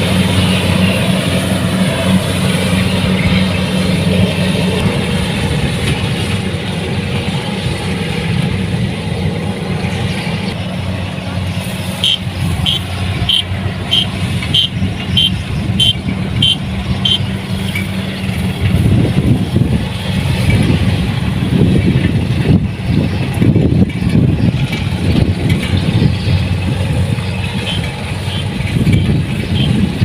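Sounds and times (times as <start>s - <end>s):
combine harvester diesel engine running: 0.0s - 30.0s
short high electronic beeps: 12.0s - 17.3s.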